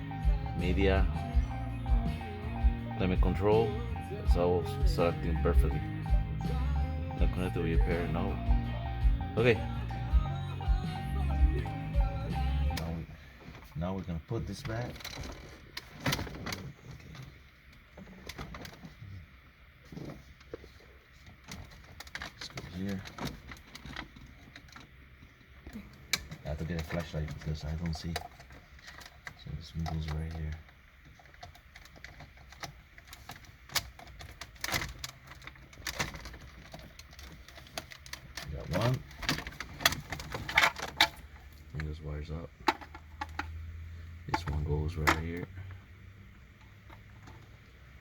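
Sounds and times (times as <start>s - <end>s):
plastic parts clicking and rattling: 14.7s - 19.0s, 21.3s - 41.6s, 42.6s - 43.6s.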